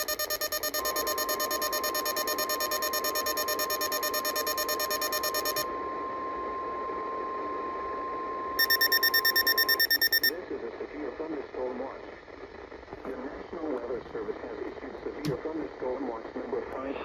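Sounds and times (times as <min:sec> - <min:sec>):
fast-pulsing electronic alert beep: 0:00.0 - 0:05.6, 0:08.6 - 0:10.3
steady alarm tone: 0:00.0 - 0:06.8, 0:07.6 - 0:10.3.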